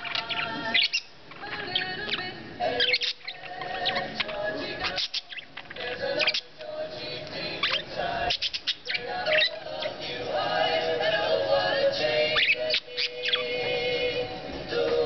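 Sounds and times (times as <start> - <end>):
budgerigars chirping and warbling: 0.0 - 15.0.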